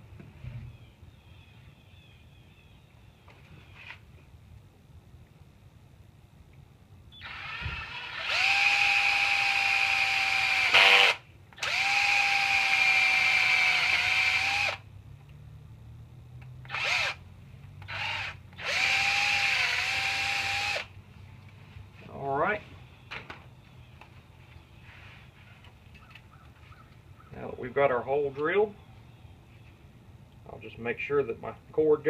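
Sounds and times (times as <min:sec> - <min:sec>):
power drill whining: 0:07.2 - 0:14.8, 0:16.6 - 0:17.2, 0:17.8 - 0:20.9.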